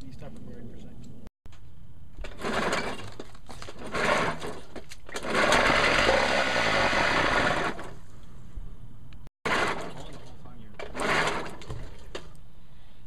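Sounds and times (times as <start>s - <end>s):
outboard motor pull-started: 2.2s - 8.0s, 9.5s - 12.0s.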